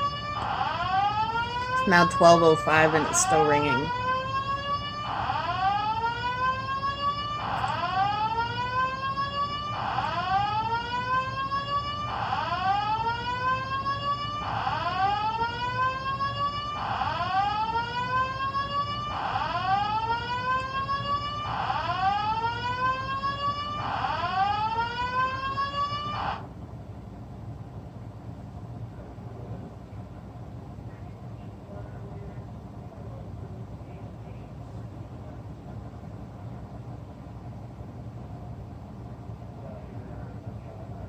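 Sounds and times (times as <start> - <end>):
fire alarm whooping: 0.0 - 26.5.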